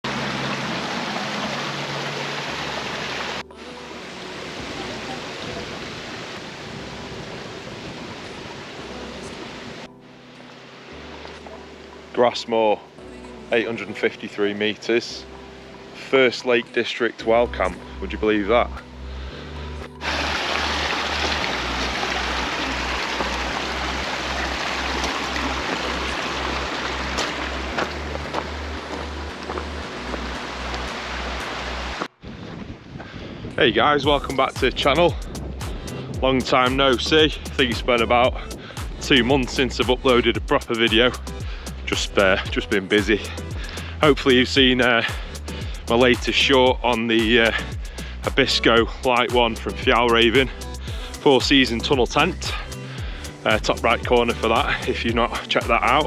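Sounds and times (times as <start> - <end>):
wind blasting over microphone: 4.6 - 9.9, 32.0 - 39.6
pulsing bass beat music: 17.4 - 32.0, 34.0 - 56.0.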